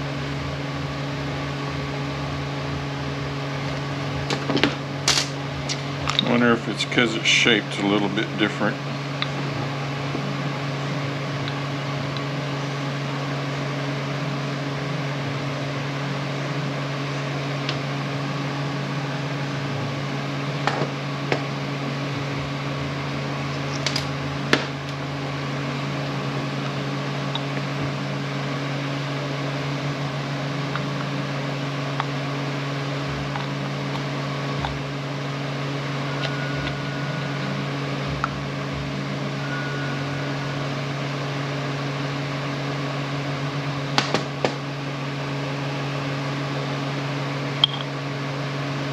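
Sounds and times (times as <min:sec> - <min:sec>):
low mechanical hum: 0:00.0 - 0:48.9.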